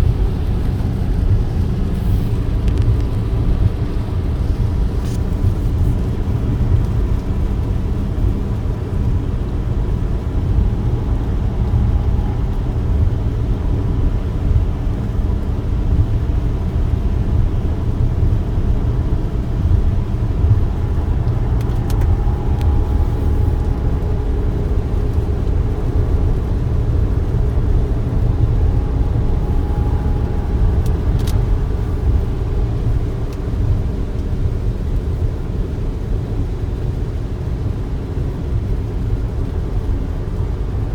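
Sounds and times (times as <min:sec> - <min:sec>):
car interior rumble: 0:00.0 - 0:40.9
faint clicks: 0:21.2 - 0:23.8.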